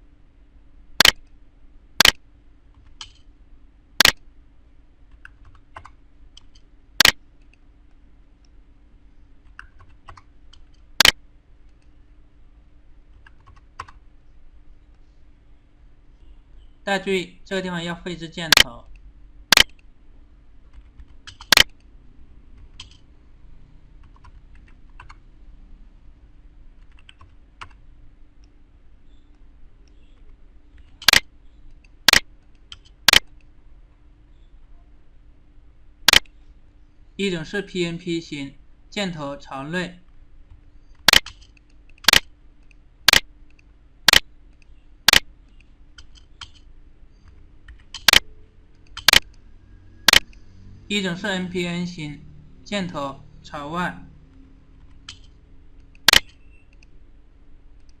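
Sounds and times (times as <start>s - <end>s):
faint steady hum: 0.0s - 58.0s
computer mouse and keyboard clicks: 2.8s - 3.3s, 5.1s - 7.6s, 9.4s - 12.0s, 18.5s - 19.9s, 20.7s - 21.9s, 22.6s - 23.1s, 29.3s - 33.5s, 40.5s - 49.4s, 50.1s - 50.4s, 54.8s - 56.9s.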